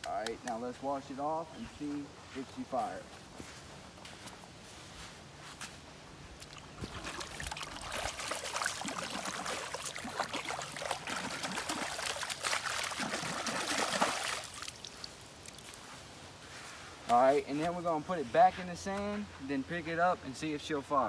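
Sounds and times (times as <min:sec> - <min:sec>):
water pouring and splashing: 0:06.4 - 0:16.2.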